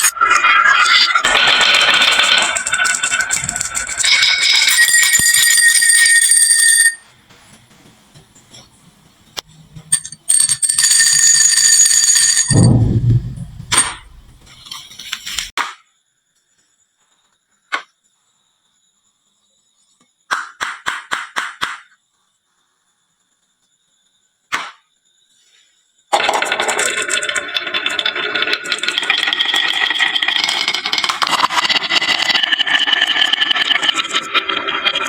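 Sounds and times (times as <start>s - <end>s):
marbles rattling on wood: 1.3s - 6.4s, 26.2s - 35.0s.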